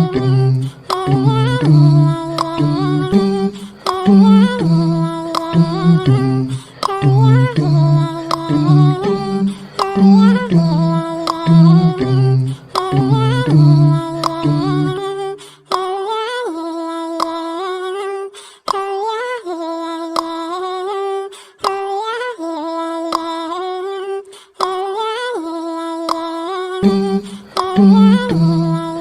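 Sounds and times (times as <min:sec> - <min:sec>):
hummed backing vocals: 0:00.0 - 0:16.0, 0:25.8 - 0:29.0
person singing a melody: 0:00.0 - 0:29.0.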